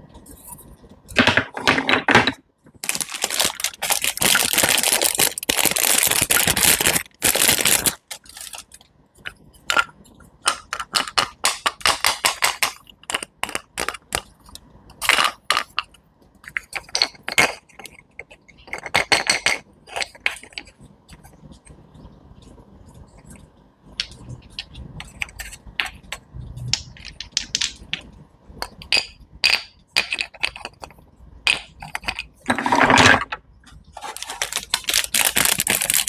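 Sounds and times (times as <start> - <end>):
crunching and crackling: 2.7 - 8.9, 30.4 - 36.0.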